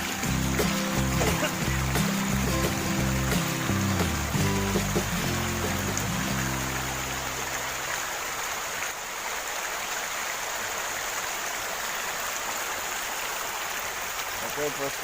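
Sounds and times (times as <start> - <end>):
low background music: 0.0 - 8.0
rain falling: 0.0 - 15.0
river water flowing: 0.0 - 15.0.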